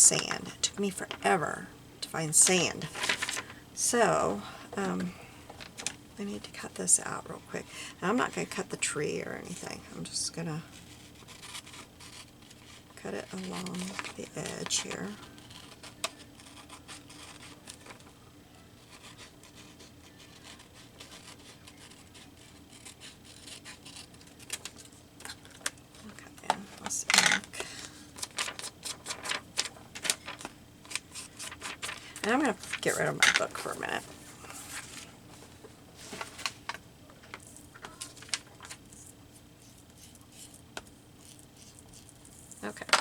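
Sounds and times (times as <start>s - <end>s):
paper rustling: 2.8s - 3.6s, 18.8s - 43.0s
scissors snipping paper: 11.2s - 18.0s, 18.8s - 25.8s.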